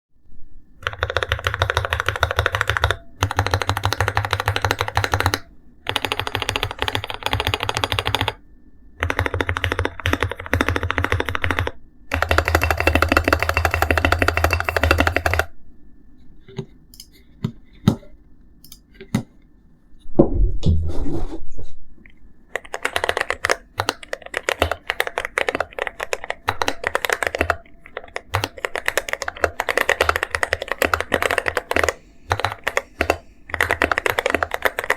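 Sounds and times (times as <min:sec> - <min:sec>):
mechanical keyboard typing: 0:00.8 - 0:08.4, 0:09.0 - 0:15.5, 0:22.5 - 0:34.9.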